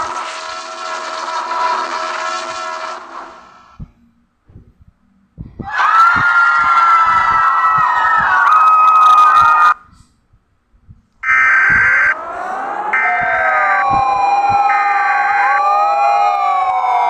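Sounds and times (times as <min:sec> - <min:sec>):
sirens winding up: 0:05.6 - 0:09.8, 0:11.2 - 0:17.0
long steady tones: 0:10.8 - 0:17.0.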